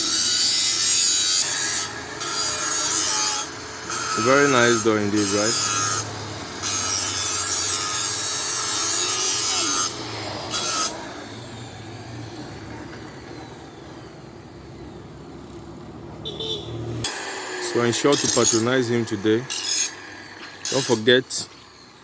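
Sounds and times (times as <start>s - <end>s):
power tool grinding: 0.0s - 14.8s, 16.8s - 22.0s.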